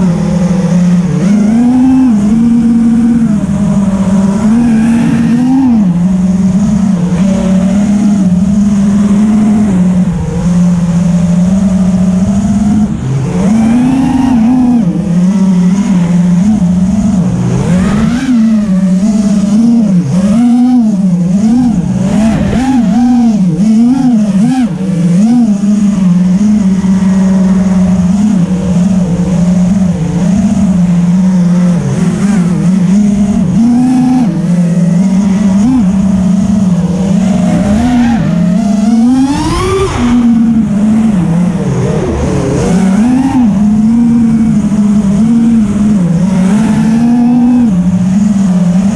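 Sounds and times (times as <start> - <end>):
quadcopter motors whining: 0.0 - 48.9.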